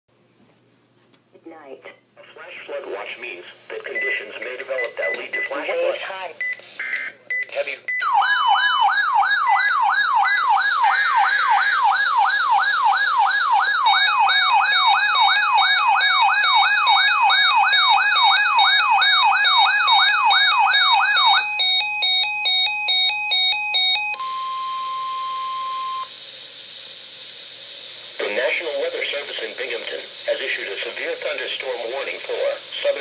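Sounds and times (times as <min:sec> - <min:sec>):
steady warning alert tone: 0:04.0 - 0:05.6, 0:06.4 - 0:24.2
stepped alternating beeps: 0:04.0 - 0:05.6, 0:06.4 - 0:08.6
electronic wailing siren: 0:08.0 - 0:26.1.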